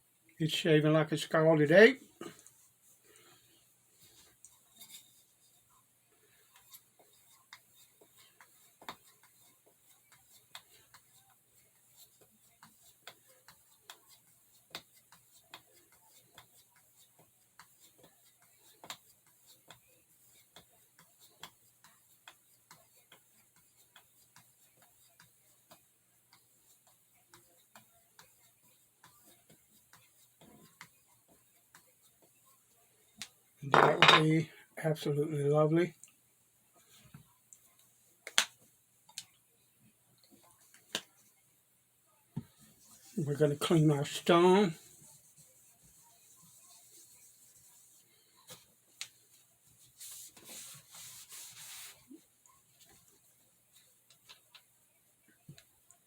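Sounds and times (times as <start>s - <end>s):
faint small ticks and clicks: 36.8s - 39.4s.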